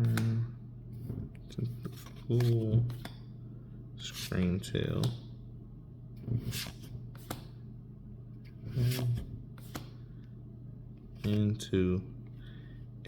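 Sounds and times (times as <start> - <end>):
steady low hum: 0.0 - 13.0
trading cards clicking and snapping: 6.5 - 7.5, 8.9 - 10.0.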